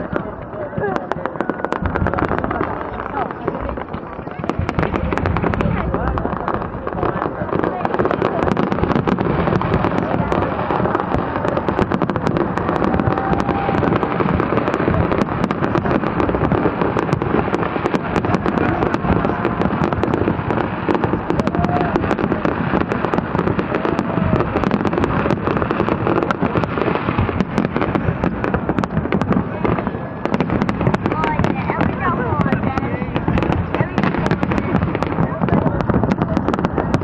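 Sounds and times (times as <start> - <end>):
fireworks bursts and crackles: 0.0 - 37.0.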